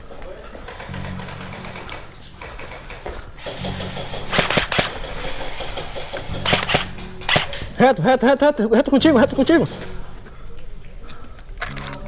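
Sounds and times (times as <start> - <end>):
airsoft gun shots: 0.9 - 7.7.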